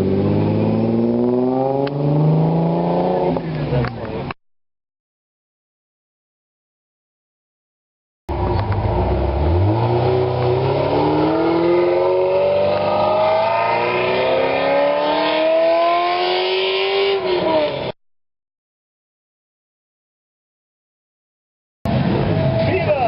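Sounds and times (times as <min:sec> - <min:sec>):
sports car engine accelerating: 0:00.0 - 0:04.4, 0:08.3 - 0:17.9.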